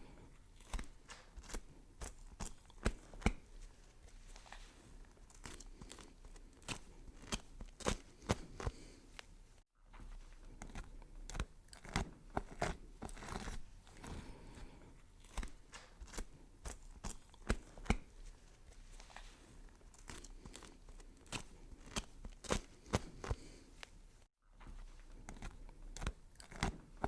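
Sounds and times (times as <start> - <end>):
knife chopping vegetables: 0.0 - 3.6, 5.3 - 9.0, 10.5 - 18.2, 20.0 - 23.6, 25.2 - 27.0.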